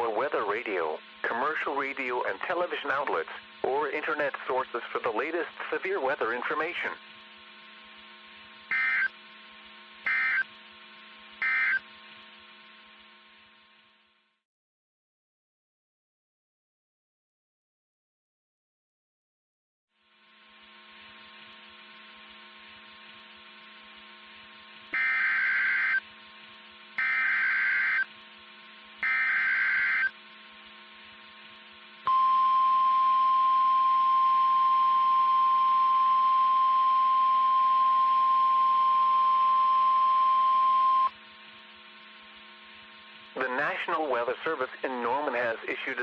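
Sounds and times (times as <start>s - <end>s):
steady radio hum: 0.0s - 11.8s, 20.6s - 46.0s
digital data bursts: 8.7s - 9.1s, 10.1s - 10.5s, 11.4s - 11.8s, 25.0s - 26.0s, 27.0s - 28.1s, 29.0s - 30.2s
steady warning alarm tone: 8.7s - 9.2s, 10.1s - 10.5s, 11.4s - 11.8s, 24.9s - 26.1s, 27.0s - 28.1s, 29.0s - 30.2s, 32.1s - 41.1s.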